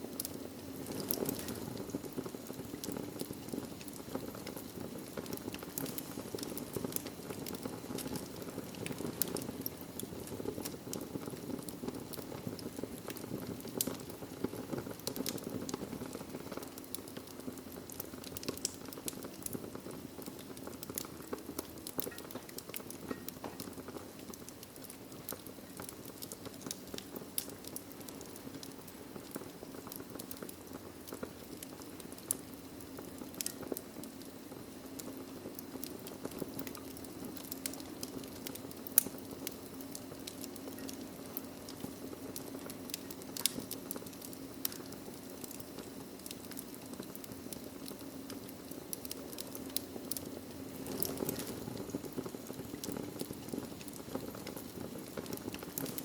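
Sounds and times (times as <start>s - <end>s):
fire crackling pops and snaps: 0.0s - 56.0s
low rush of flames: 0.0s - 56.0s.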